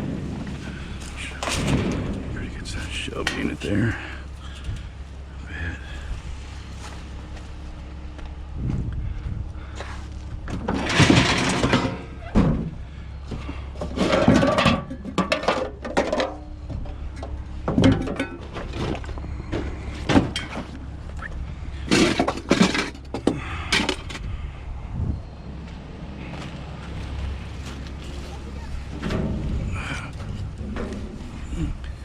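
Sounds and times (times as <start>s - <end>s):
steady low hum: 0.0s - 32.0s
scrap items clattering: 0.5s - 4.7s, 10.5s - 12.6s, 13.3s - 16.5s, 21.8s - 24.2s.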